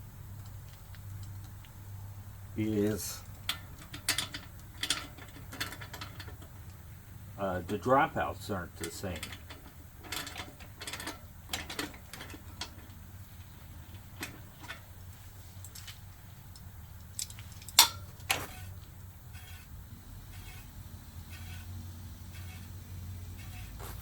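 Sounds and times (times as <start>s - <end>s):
hand tools clicking on metal: 2.6s - 6.8s, 8.7s - 13.0s, 15.6s - 18.5s.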